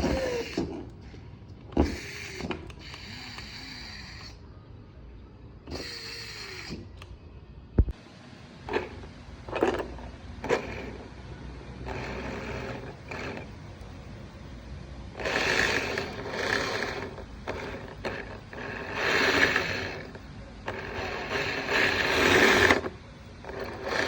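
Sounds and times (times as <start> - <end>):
toy car motor and gears whirring: 0.0 - 4.5, 5.6 - 7.1, 8.7 - 11.1, 11.8 - 13.6, 15.1 - 24.0.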